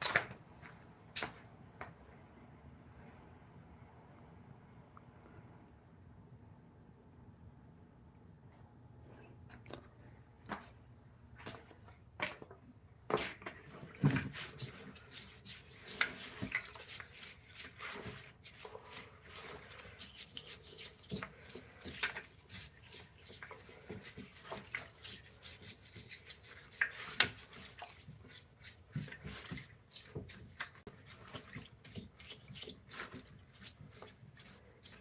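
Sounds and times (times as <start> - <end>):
rubbing and scraping on wood: 13.1 - 35.0.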